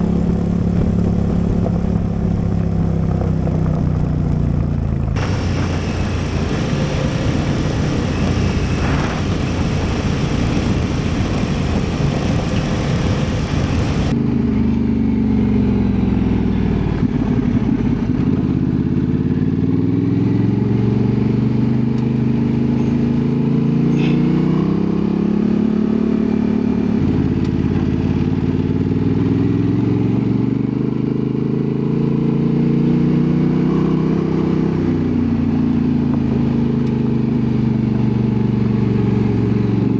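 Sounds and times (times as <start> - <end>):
motorcycle engine running: 0.0 - 21.9
heavy rushing noise: 5.1 - 14.1.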